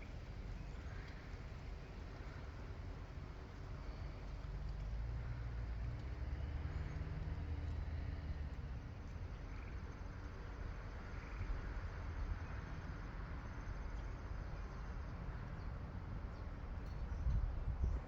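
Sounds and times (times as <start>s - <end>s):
wind buffeting microphone: 17.0s - 18.0s.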